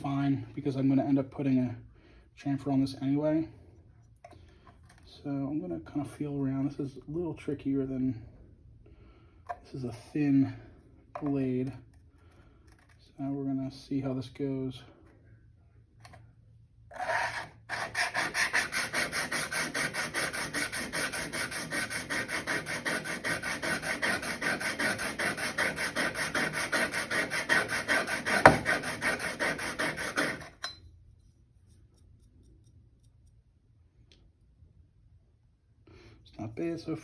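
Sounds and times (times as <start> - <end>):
blade scraping on sharpening stone: 16.9 - 30.8
knock: 28.4 - 28.8.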